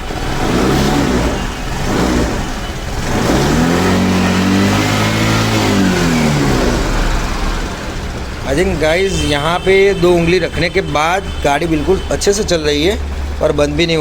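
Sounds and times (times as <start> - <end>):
scooter engine revving: 0.0 - 14.0.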